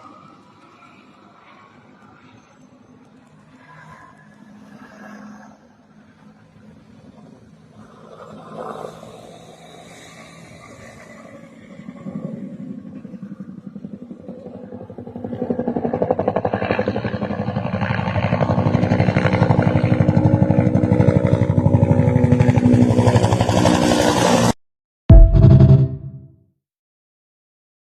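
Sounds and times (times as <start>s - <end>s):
helicopter rotor thump: 25.1s - 26.2s.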